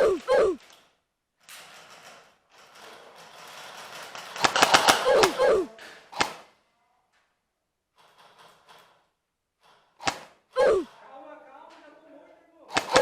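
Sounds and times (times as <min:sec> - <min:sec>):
airsoft guns firing bursts: 0:04.1 - 0:06.5, 0:10.0 - 0:10.4, 0:12.7 - 0:13.0.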